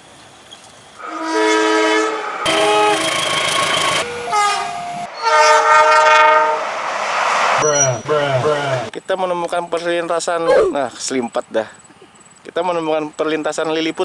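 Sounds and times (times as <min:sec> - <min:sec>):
train horn blasts: 0:01.0 - 0:06.9.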